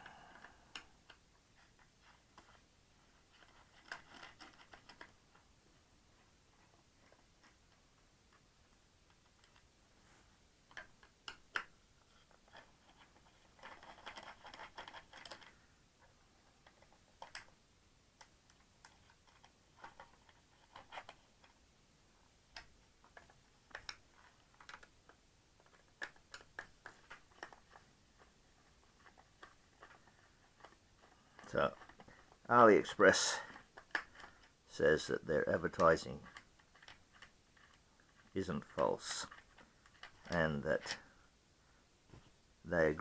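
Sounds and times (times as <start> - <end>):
plastic scraping: 1.6 - 5.2.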